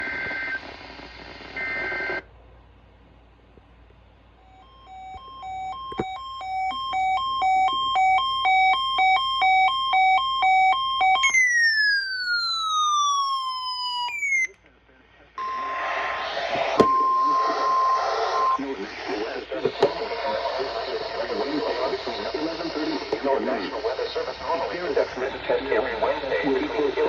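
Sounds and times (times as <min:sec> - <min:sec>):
two-tone alarm: 0:04.4 - 0:14.6, 0:15.4 - 0:18.6
falling siren tone: 0:04.5 - 0:14.5, 0:15.4 - 0:18.6.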